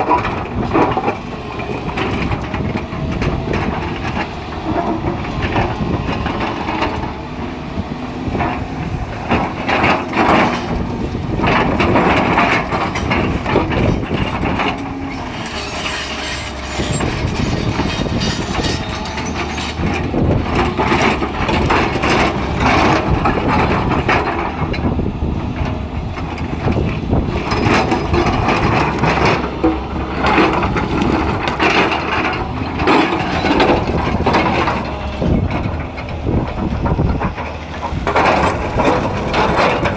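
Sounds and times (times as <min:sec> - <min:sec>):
excavator engine droning: 0:00.0 - 0:39.9
rocks scraping and clattering: 0:08.4 - 0:24.8, 0:25.6 - 0:39.9.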